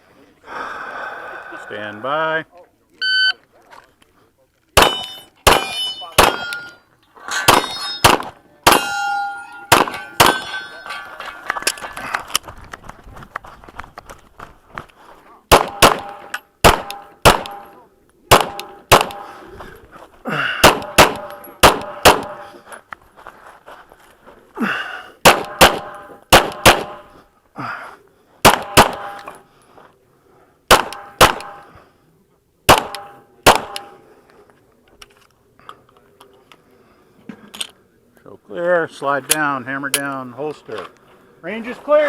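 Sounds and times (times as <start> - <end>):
pistol shots: 4.8 - 6.7, 7.5 - 9.0, 9.6 - 10.7, 15.5 - 19.3, 20.6 - 22.4, 25.2 - 27.1, 28.4 - 29.3, 30.7 - 31.6, 32.7 - 34.0
metallic ring from steel targets: 4.8 - 11.6.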